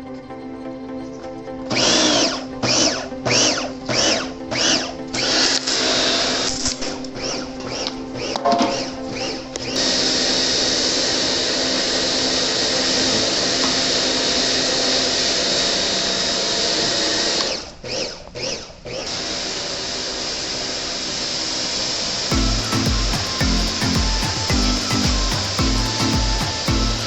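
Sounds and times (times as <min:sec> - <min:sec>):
electric power tool running: 0:01.7 - 0:27.0.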